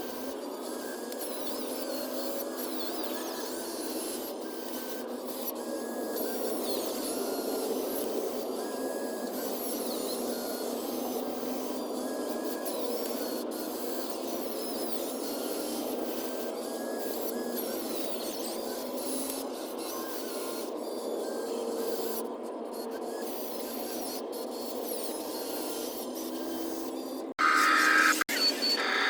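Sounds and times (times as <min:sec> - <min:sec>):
small electric motors whirring: 0:00.0 - 0:29.0
short motor whines: 0:21.3 - 0:29.0.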